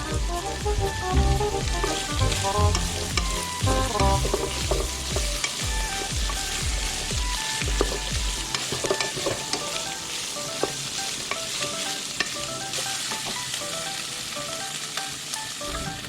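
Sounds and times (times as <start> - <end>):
chicken sizzling in a pan: 0.0 - 16.0
spoon stirring and scraping: 7.7 - 9.8.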